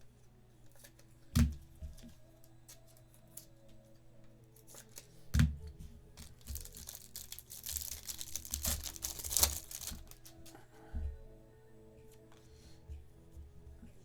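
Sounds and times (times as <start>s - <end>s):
foil wrapper tearing and crinkling: 6.2s - 10.5s.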